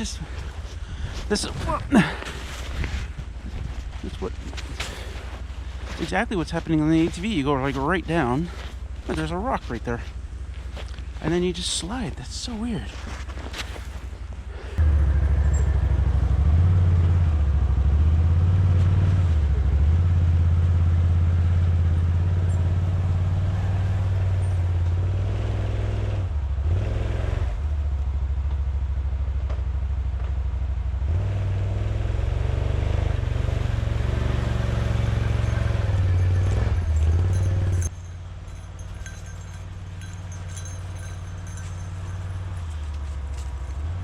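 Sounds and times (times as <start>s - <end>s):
atv engine revving under load: 31.1s - 37.9s.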